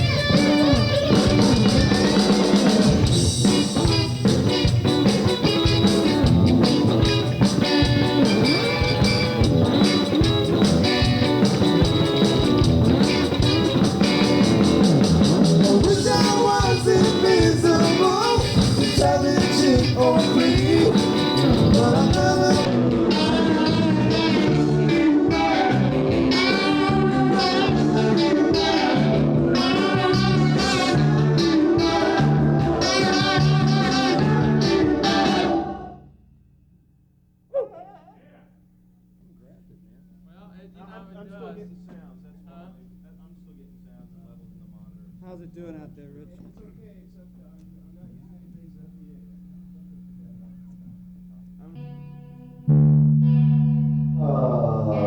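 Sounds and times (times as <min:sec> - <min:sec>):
electric guitar: 0:00.0 - 0:36.1, 0:49.7 - 0:55.0
drums: 0:00.0 - 0:36.8
bass: 0:00.0 - 0:37.6, 0:38.2 - 0:55.0.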